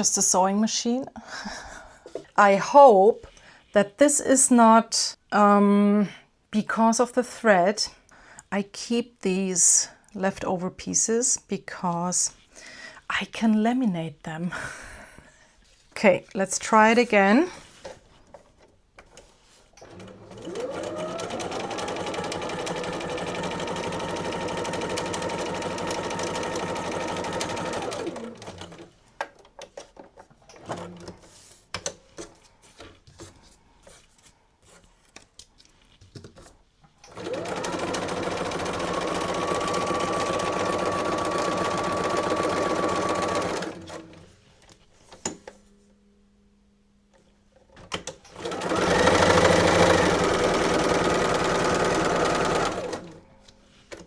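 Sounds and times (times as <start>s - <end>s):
sewing machine motor whining: 19.9s - 28.8s, 37.1s - 44.2s, 48.3s - 53.2s.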